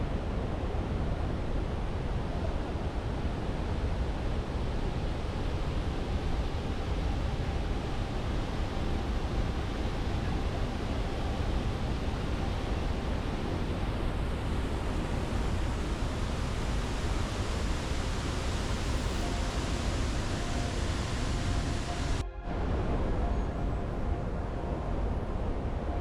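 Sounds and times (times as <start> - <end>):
waterfall rushing: 16.2 - 22.2.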